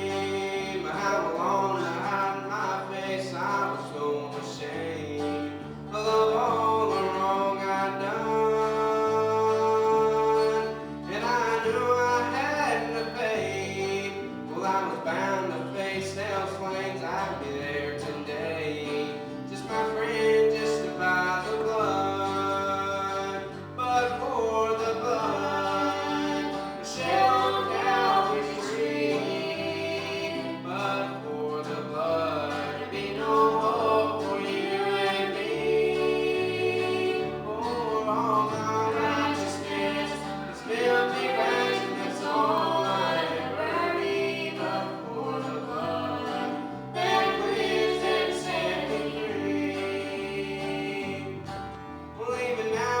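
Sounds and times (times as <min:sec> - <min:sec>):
gospel choir singing: 0:00.0 - 0:53.0
instrumental accompaniment: 0:16.5 - 0:53.0.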